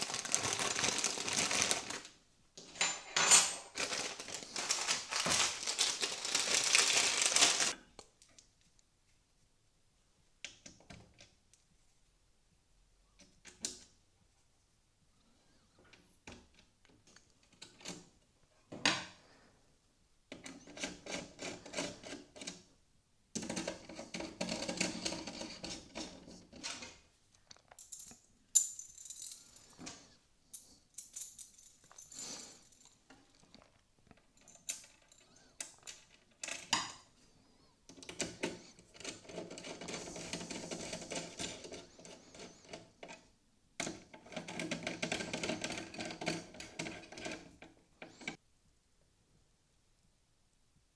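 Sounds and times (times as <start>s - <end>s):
computer parts clicking and rattling: 37.9s - 43.2s, 43.8s - 48.4s.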